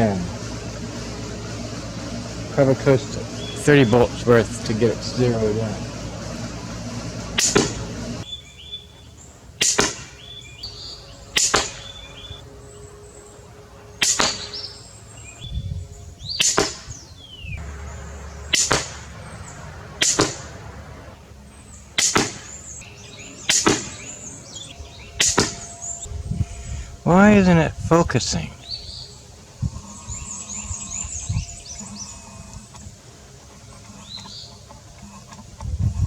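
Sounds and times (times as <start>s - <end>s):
birds chirping faintly: 0.0s - 36.0s
crossbow shot snap: 7.4s - 7.9s, 9.6s - 10.2s, 14.0s - 14.7s, 18.5s - 19.1s, 19.9s - 20.7s, 22.0s - 22.6s, 23.5s - 24.1s.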